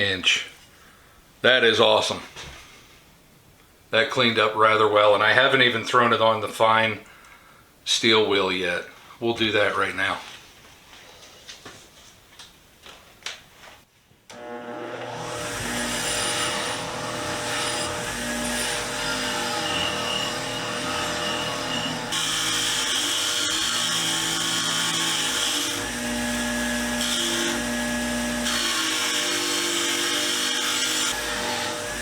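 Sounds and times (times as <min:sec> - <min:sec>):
motor hum: 0:14.3 - 0:24.4
wire wheel scrubbing metal: 0:15.0 - 0:32.0.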